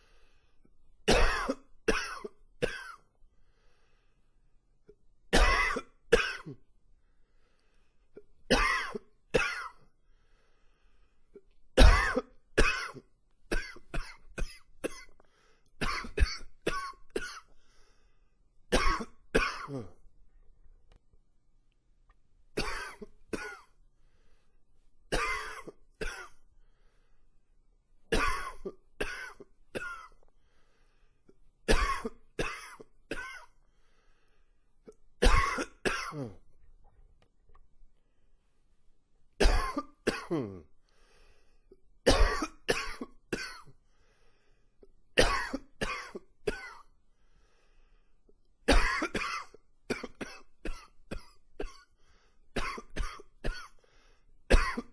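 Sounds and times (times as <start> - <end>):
man coughing: 1.1 - 3.0, 5.4 - 6.6, 8.5 - 9.8, 11.8 - 15.1, 18.7 - 20.0, 22.6 - 23.7, 25.1 - 26.4, 28.1 - 30.2, 31.7 - 33.5, 35.2 - 36.4, 39.4 - 40.7, 42.1 - 43.7, 45.2 - 46.8, 48.7 - 51.9, 52.6 - 53.7, 54.5 - 54.9.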